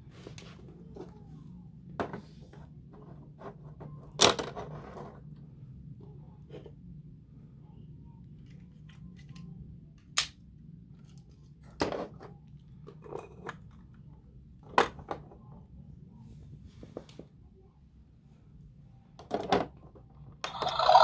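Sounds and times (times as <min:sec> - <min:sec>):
plastic toy clicks and knocks: 0:20.5 - 0:21.0.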